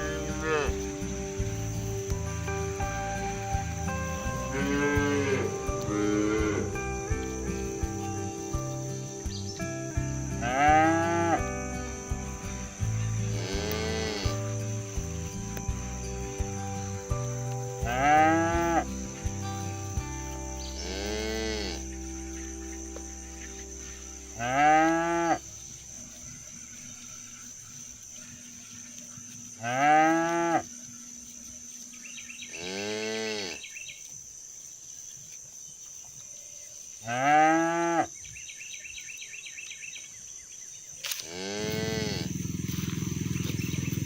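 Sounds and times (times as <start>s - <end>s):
cattle mooing: 0.0s - 0.9s, 4.2s - 6.8s, 10.4s - 11.4s, 13.2s - 14.4s, 17.9s - 18.8s, 20.8s - 21.8s, 24.4s - 25.4s, 29.6s - 30.7s, 37.1s - 38.1s, 41.3s - 42.8s.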